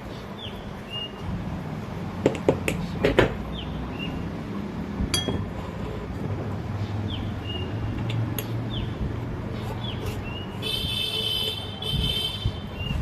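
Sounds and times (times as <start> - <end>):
metal parts and tools clinking: 5.1 - 5.6.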